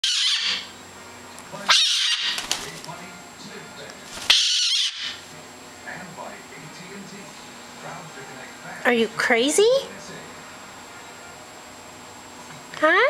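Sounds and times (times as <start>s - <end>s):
cockatoo screeching: 0.0s - 0.7s, 1.7s - 2.6s, 4.2s - 5.2s.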